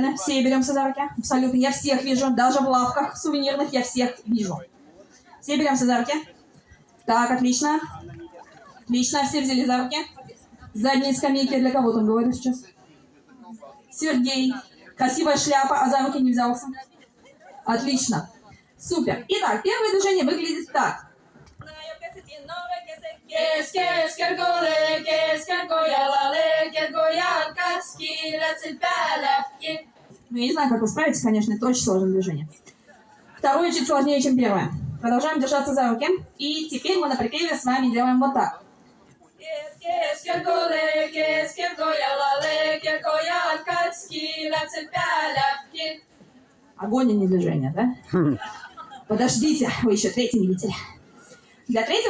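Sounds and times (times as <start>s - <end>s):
women singing folk song: 21.6s - 29.9s, 39.4s - 46.2s.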